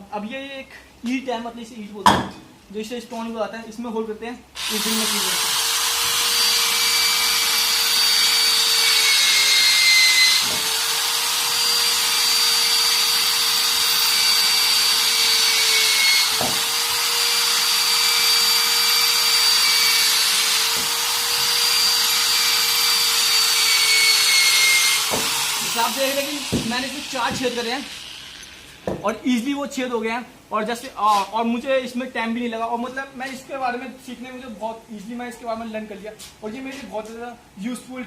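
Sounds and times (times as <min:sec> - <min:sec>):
electric drill whining into brick: 0:04.6 - 0:28.9.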